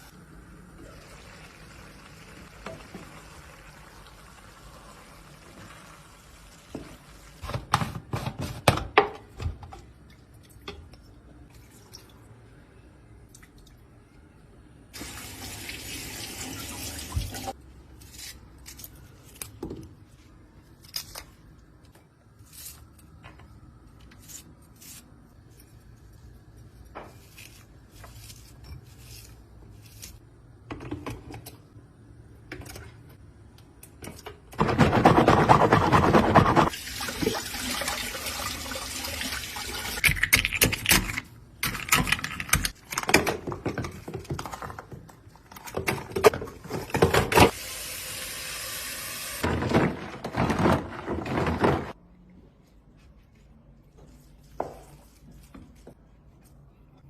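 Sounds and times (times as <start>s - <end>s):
water running: 15.0s - 17.6s, 36.7s - 40.0s.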